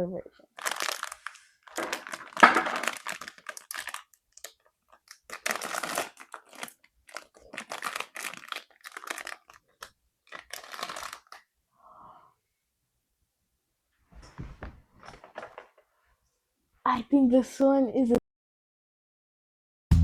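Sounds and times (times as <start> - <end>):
plastic packaging crinkling and tearing: 0.5 - 11.5.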